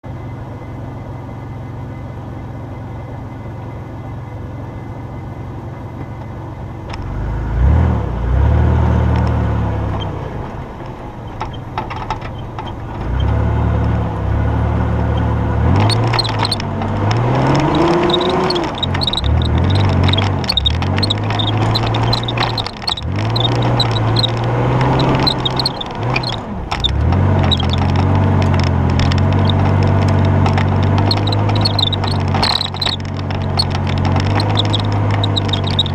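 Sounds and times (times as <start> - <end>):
engine clatters and knocks: 2.6 - 7.8, 8.4 - 35.9
car engine revving: 6.9 - 35.9.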